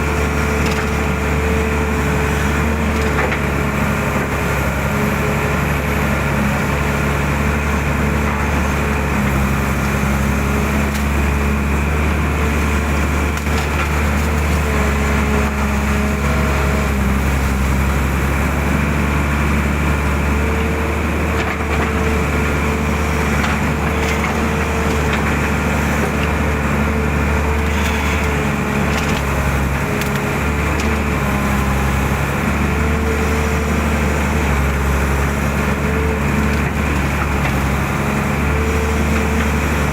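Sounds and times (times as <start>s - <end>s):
excavator diesel engine running: 0.0s - 39.9s
hydraulic whine: 24.3s - 29.8s.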